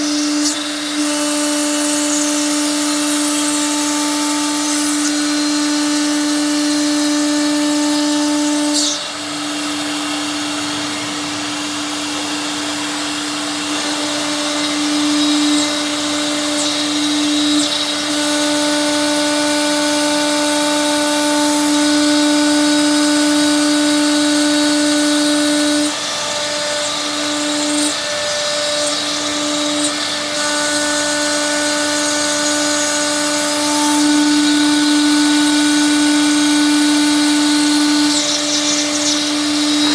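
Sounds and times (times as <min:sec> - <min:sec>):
stone saw motor whine: 0:00.0 - 0:39.9
blade grinding stone: 0:37.1 - 0:39.9.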